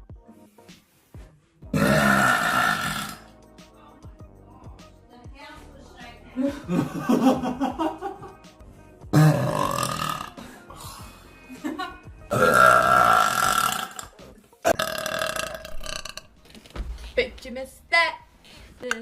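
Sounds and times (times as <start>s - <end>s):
woman burping loudly: 1.7s - 3.2s, 9.1s - 10.4s, 12.3s - 14.1s, 14.7s - 16.3s.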